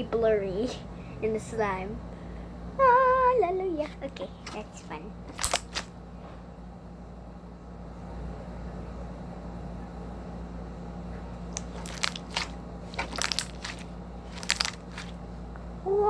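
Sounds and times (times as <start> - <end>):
steady low hum: 0.0 - 16.0
slime crackling and popping: 5.4 - 5.9, 11.5 - 15.1.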